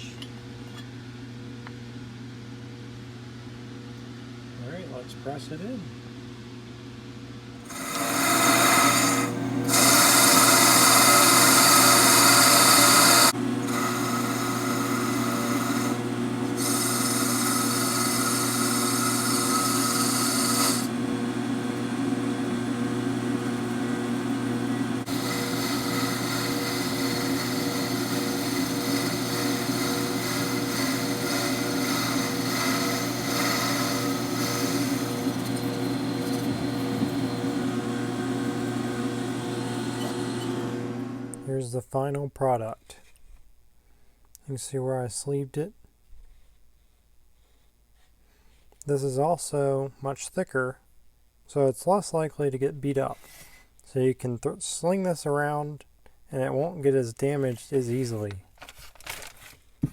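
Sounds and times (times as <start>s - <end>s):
machine hum: 7.4s - 41.5s
power tool scraping metal: 7.7s - 41.1s.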